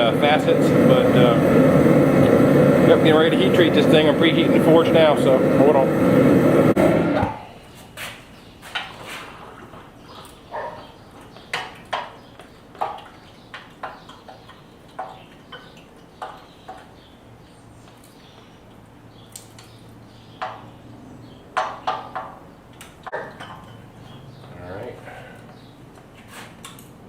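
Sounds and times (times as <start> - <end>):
low steady hum: 0.0 - 7.4.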